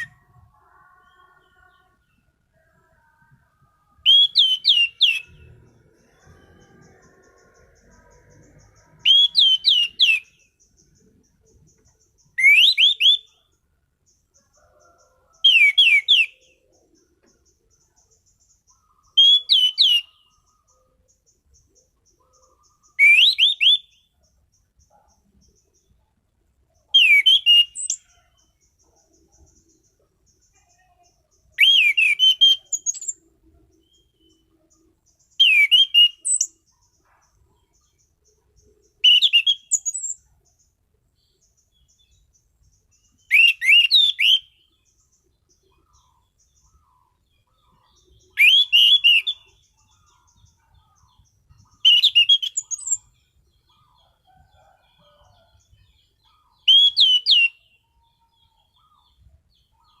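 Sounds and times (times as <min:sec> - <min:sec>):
soft bird chirps: 0:00.0 - 1:00.0
thrush whistled song: 0:03.9 - 0:05.6, 0:09.0 - 0:10.4, 0:12.3 - 0:13.4, 0:15.4 - 0:16.5, 0:19.1 - 0:20.3, 0:22.9 - 0:24.1, 0:27.0 - 0:28.1, 0:31.6 - 0:33.2, 0:35.3 - 0:36.6, 0:39.0 - 0:40.2, 0:43.3 - 0:44.7, 0:48.3 - 0:49.6, 0:51.8 - 0:53.1, 0:56.6 - 0:57.7.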